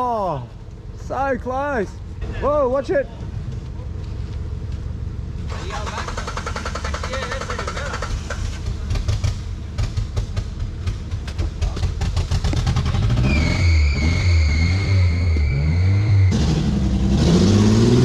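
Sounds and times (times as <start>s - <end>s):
sharp clicks and knocks: 6.1s - 12.8s
engine revving under load: 12.0s - 18.0s.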